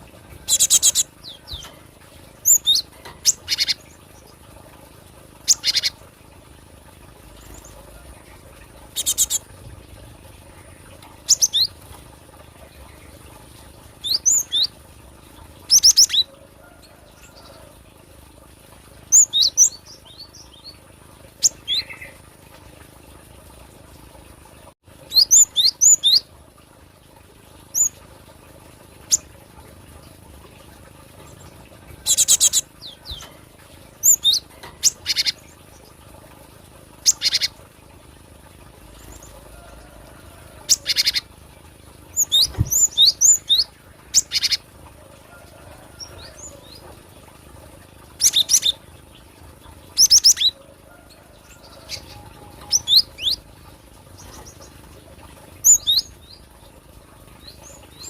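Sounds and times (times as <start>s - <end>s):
bird chirping: 8.9s - 9.4s.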